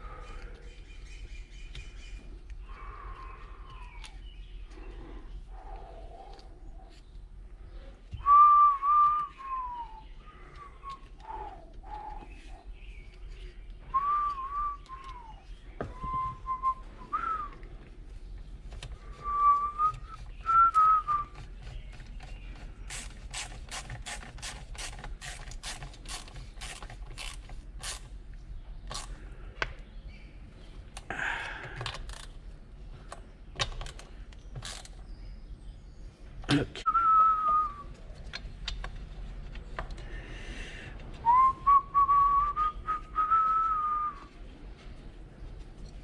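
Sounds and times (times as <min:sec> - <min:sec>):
person whistling a tune: 0:08.2 - 0:10.0, 0:14.0 - 0:15.3, 0:15.9 - 0:17.5, 0:19.2 - 0:21.4, 0:36.9 - 0:37.9, 0:41.2 - 0:44.3
sharp clicks of small parts: 0:33.1 - 0:35.0.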